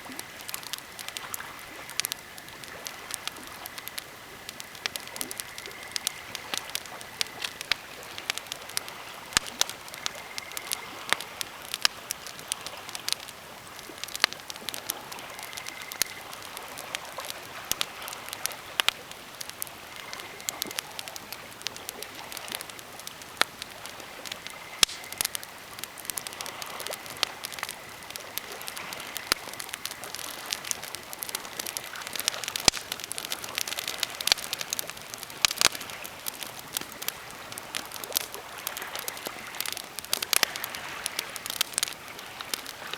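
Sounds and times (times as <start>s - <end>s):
campfire crackling and popping: 0.0s - 42.9s
fire hiss: 0.0s - 42.9s.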